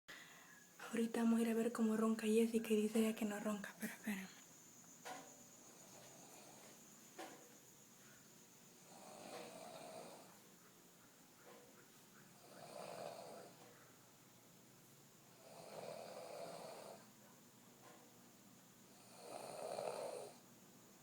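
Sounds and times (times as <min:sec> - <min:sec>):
woman snoring: 0:08.8 - 0:10.4, 0:12.4 - 0:13.6, 0:15.3 - 0:17.1, 0:18.9 - 0:20.5.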